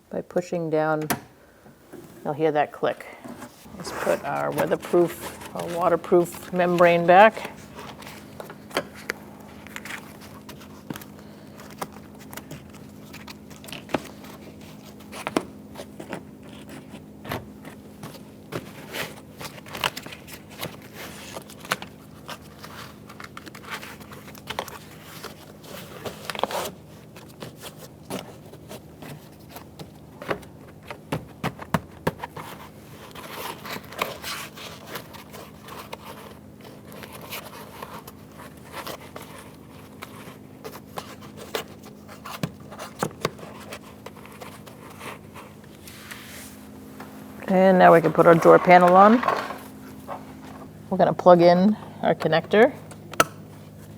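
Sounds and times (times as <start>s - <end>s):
steady low hum: 0.0s - 23.4s, 35.6s - 53.9s
plastic membrane crinkling: 2.9s - 45.9s, 46.6s - 52.8s.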